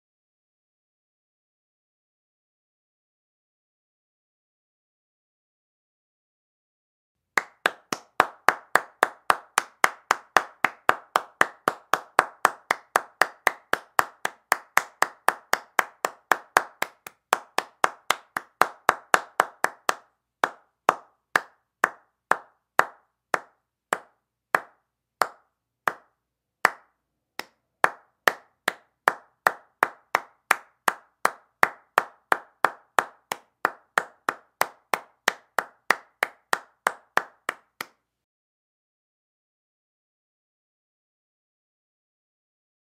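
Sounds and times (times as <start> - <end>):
person clapping hands: 7.4 - 38.0.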